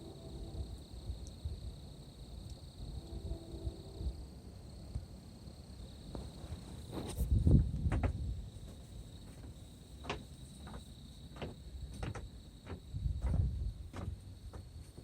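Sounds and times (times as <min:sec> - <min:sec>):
insects droning: 0:00.0 - 0:15.0
sharp clicks and crunches: 0:11.4 - 0:14.2.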